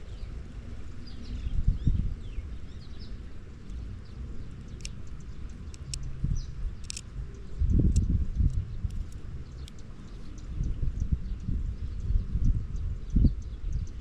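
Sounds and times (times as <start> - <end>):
small birds chirping: 0.0 - 14.0
steady low rumble: 0.0 - 14.0
sharp clicks: 4.5 - 9.9.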